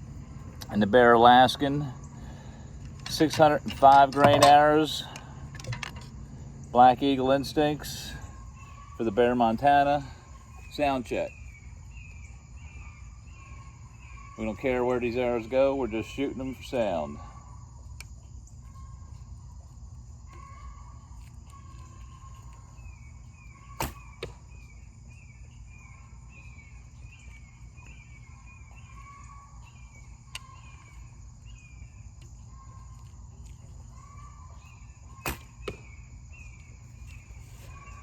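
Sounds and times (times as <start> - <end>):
arrow striking target: 23.8 - 24.4, 35.2 - 35.9.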